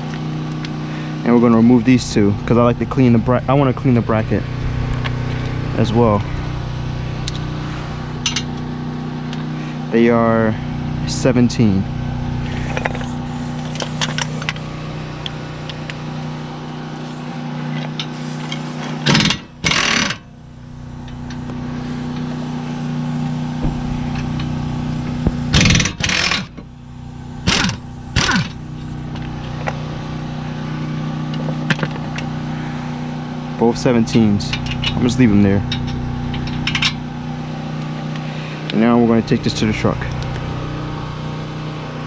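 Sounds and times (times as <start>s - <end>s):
steady low hum: 0.0s - 42.0s
impact wrench rattling: 8.2s - 8.6s, 12.4s - 22.8s, 23.4s - 26.7s, 27.4s - 29.8s, 34.1s - 37.0s.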